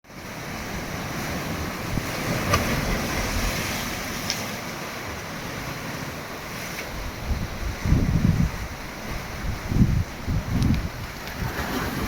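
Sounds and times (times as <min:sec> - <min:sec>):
surf washing against rocks: 0:00.1 - 0:12.0
wind buffeting microphone: 0:06.9 - 0:12.0.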